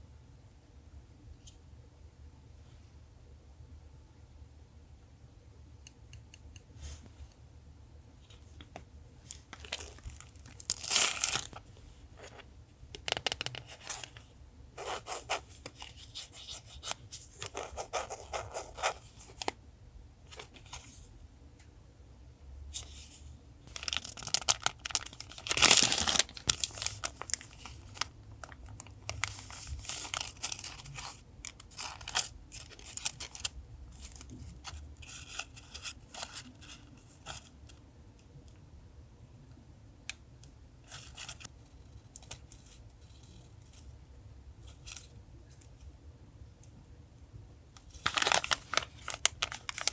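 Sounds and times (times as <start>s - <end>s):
paper rustling and tearing: 22.8s - 37.5s, 47.9s - 49.9s.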